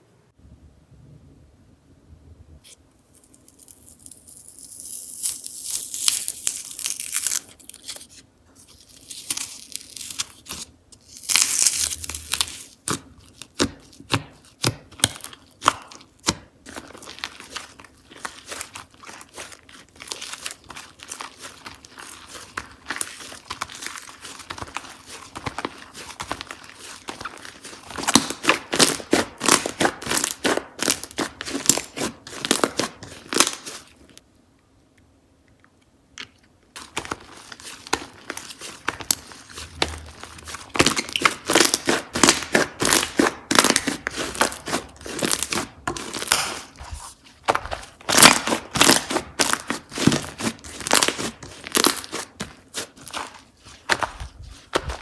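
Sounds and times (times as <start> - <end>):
slime squished by hand: 9.2 - 34.0, 36.8 - 55.0.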